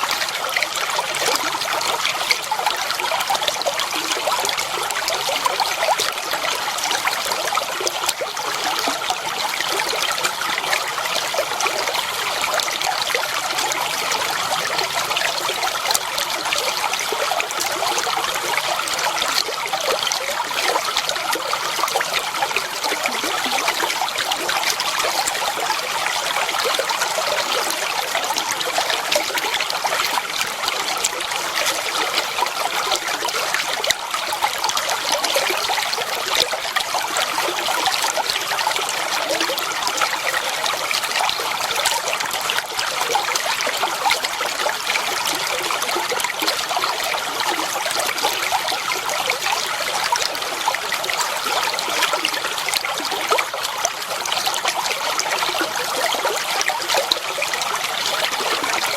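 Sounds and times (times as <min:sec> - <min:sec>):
water trickling over stones: 0:00.0 - 0:58.9.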